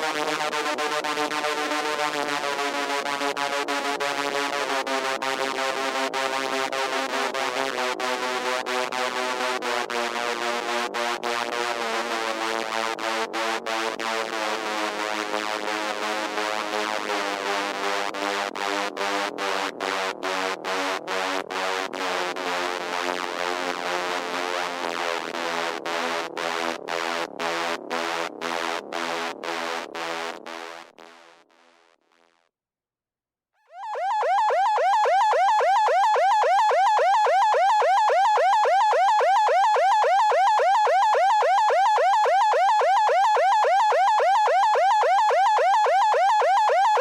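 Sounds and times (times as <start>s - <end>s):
electronic alarm siren: 0.0s - 10.6s, 33.7s - 47.0s.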